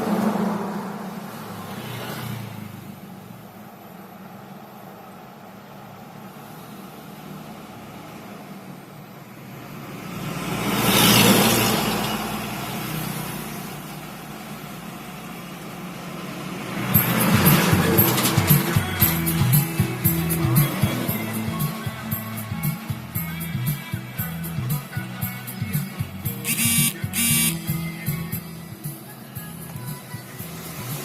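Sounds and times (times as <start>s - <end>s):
vehicle passing close: 0.0s - 3.4s, 9.5s - 21.5s
road traffic rumble: 0.0s - 31.0s.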